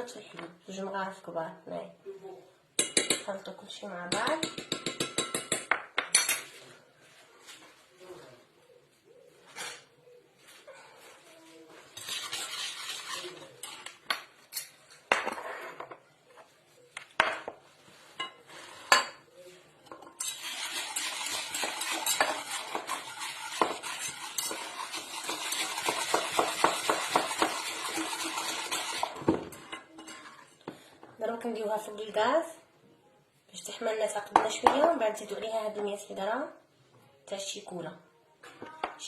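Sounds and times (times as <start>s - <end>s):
fast stirring in a bowl: 12.0s - 13.8s, 20.2s - 30.3s.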